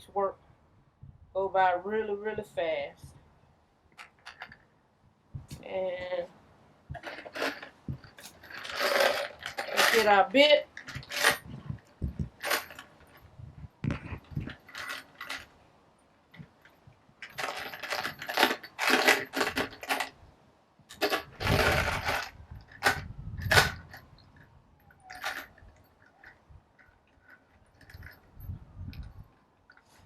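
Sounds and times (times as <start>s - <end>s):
metal drill bits clinking: 4.0s - 4.6s, 7.0s - 13.3s, 13.9s - 15.5s, 16.4s - 20.2s, 20.9s - 30.0s.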